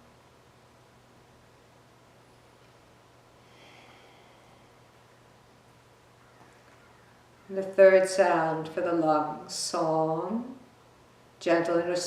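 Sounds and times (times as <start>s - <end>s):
steady low hum: 0.0s - 12.0s
person hissing breath out: 3.4s - 4.8s.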